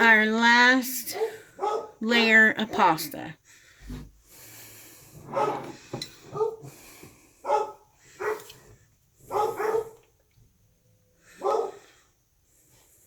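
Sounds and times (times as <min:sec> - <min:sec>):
dog barking: 0:01.1 - 0:02.0, 0:05.3 - 0:05.7, 0:06.3 - 0:06.7, 0:07.4 - 0:08.5, 0:09.3 - 0:10.0, 0:11.4 - 0:11.9.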